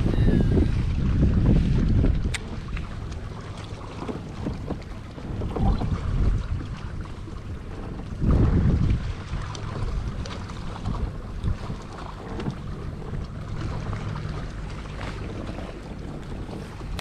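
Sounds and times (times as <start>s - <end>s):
water splashing: 0.0s - 17.0s
wind buffeting microphone: 0.0s - 17.0s.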